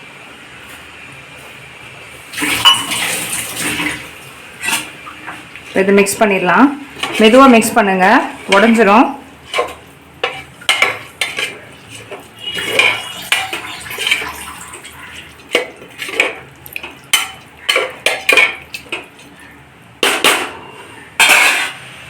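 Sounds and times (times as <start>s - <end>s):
utensil scraping metal pot: 2.4s - 20.5s
utensil clatter: 6.9s - 20.6s.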